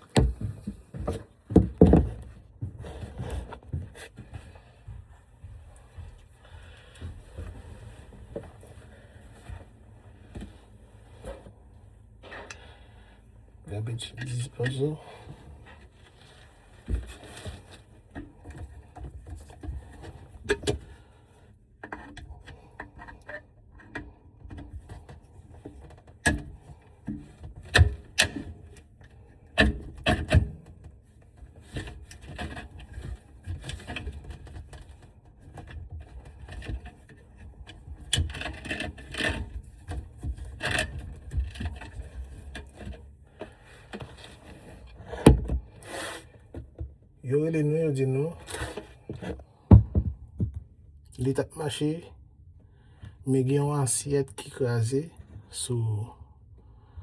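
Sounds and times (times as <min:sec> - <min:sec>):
objects knocking and scraping: 0:00.0 - 0:04.5, 0:48.4 - 0:50.8.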